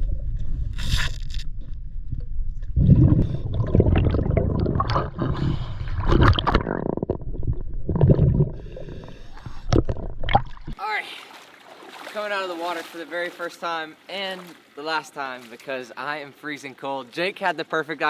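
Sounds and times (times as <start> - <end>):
underwater river rumbling: 1.8 - 14.8
bubbling: 2.8 - 13.0.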